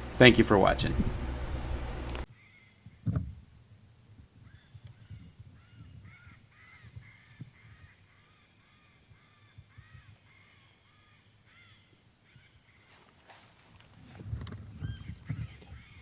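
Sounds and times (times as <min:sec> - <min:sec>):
repeated animal calls: 0:02.3 - 0:03.2, 0:04.3 - 0:13.2, 0:14.7 - 0:16.0.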